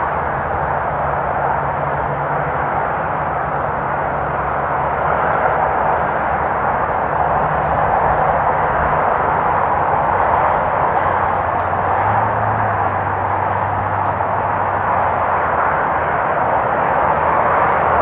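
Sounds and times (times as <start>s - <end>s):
distant freeway traffic: 0.0s - 18.0s
faint low engine hum: 0.0s - 18.0s.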